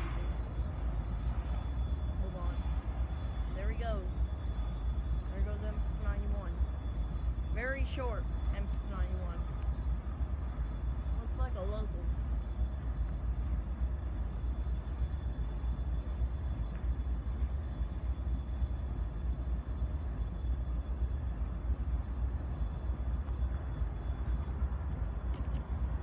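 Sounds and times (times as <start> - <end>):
freight train rumbling past: 0.0 - 1.6
faint steady high tone: 0.0 - 25.0.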